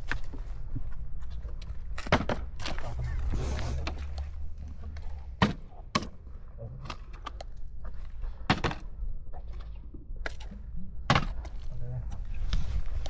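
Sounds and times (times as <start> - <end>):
low rumble: 2.7 - 5.4.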